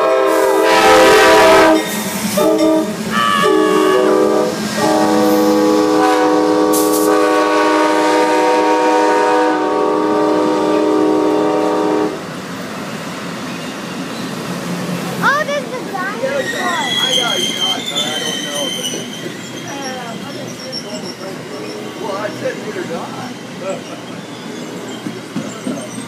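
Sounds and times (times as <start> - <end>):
train air horn blasts: 0.0 - 12.2
train passing: 0.0 - 26.0.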